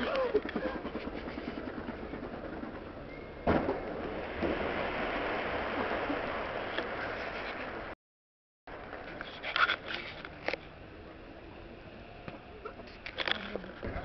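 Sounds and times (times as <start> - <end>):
firework bang: 3.4 - 7.1
faint crackling background noise: 3.5 - 8.0, 8.7 - 14.0.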